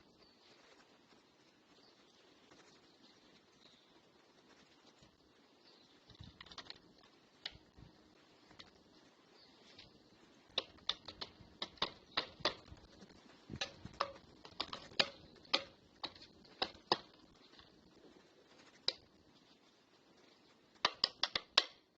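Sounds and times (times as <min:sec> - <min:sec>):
bird pecking on plastic housing: 0:06.1 - 0:07.7, 0:10.5 - 0:17.7, 0:20.8 - 0:21.8.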